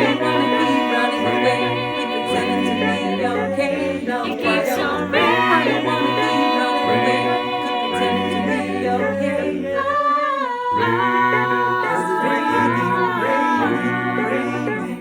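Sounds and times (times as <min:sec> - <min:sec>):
a cappella choir singing chords: 0:00.0 - 0:15.0.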